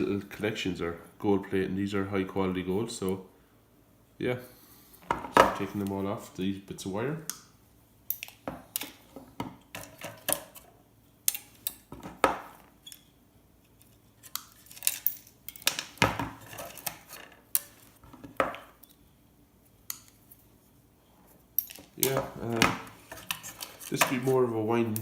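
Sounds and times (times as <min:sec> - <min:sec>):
hand tools clicking on metal: 0:23.2 - 0:25.0.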